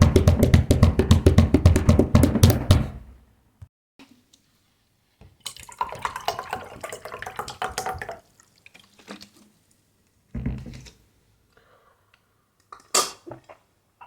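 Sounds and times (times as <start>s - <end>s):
water splashing and trickling: 5.4s - 9.3s.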